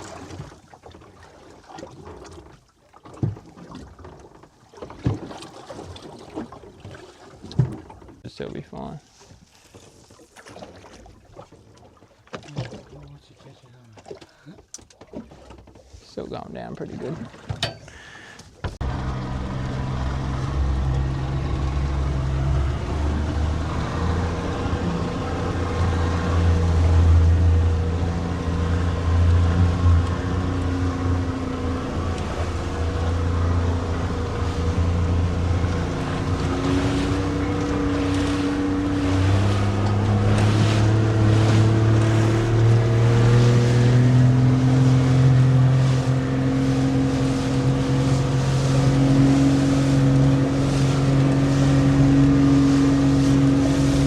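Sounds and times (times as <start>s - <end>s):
boat engine running: 12.4s - 54.0s.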